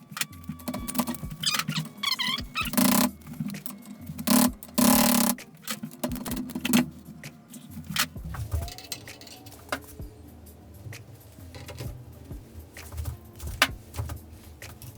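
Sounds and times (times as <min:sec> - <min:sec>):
metal tools clicking and rattling: 0:00.0 - 0:10.0, 0:11.3 - 0:12.1.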